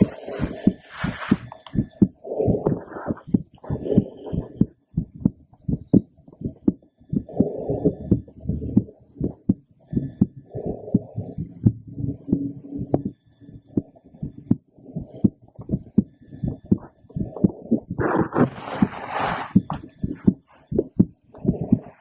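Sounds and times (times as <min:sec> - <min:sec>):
heartbeat thumps: 0:00.0 - 0:22.0.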